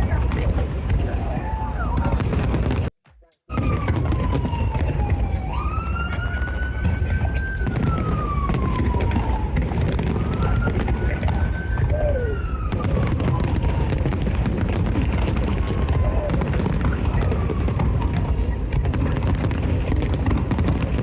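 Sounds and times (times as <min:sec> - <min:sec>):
crowd and city rumble: 0:00.0 - 0:02.9, 0:03.5 - 0:21.0
emergency siren wailing: 0:03.5 - 0:21.0.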